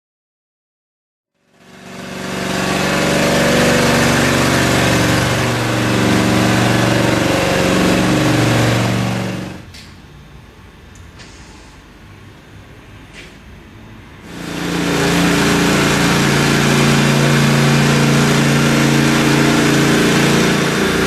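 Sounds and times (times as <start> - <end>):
wide grinding hiss: 1.5 - 9.6, 14.3 - 21.0
loader engine running: 1.6 - 9.7, 14.3 - 21.0.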